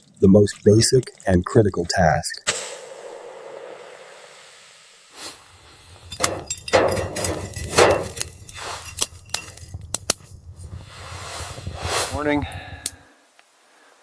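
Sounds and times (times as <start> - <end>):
ice clinking into metal pot: 6.1 - 9.7.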